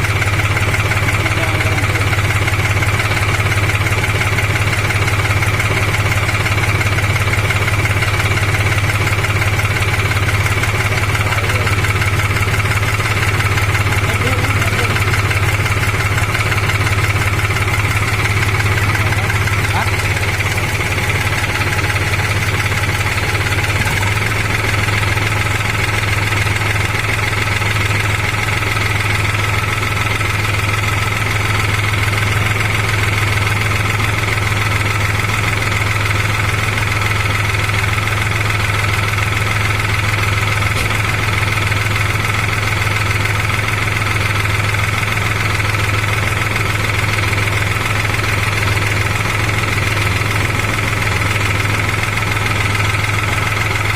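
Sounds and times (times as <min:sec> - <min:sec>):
tractor diesel engine idling: 0:00.0 - 0:53.9.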